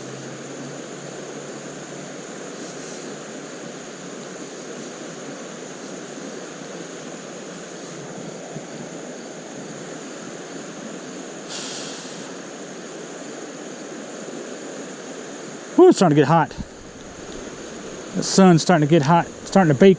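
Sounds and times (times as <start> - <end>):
creek water rushing over rocks: 0.0 - 19.9
short loud hiss: 11.5 - 12.4.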